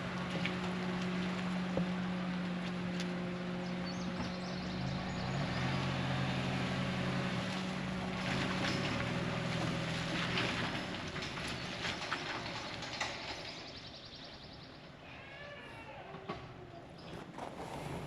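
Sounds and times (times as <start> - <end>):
vehicle engine running: 0.0 - 13.0.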